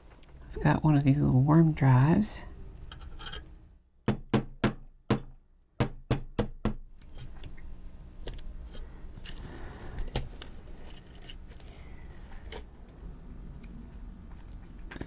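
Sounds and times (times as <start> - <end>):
low background noise: 0.0 - 15.0
sharp knocks: 4.1 - 6.8.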